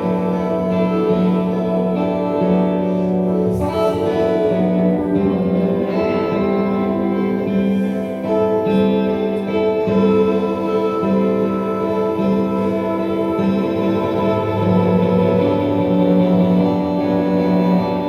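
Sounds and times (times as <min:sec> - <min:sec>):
instrumental music: 0:00.0 - 0:18.0.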